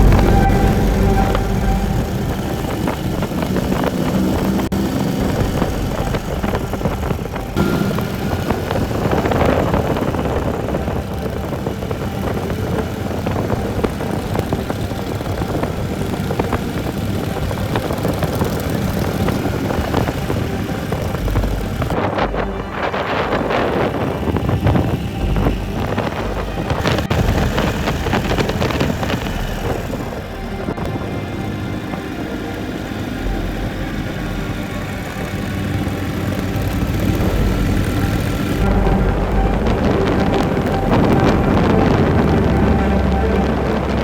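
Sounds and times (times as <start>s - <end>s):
motorcycle engine running: 0.0s - 44.0s
rush of noise: 0.0s - 44.0s.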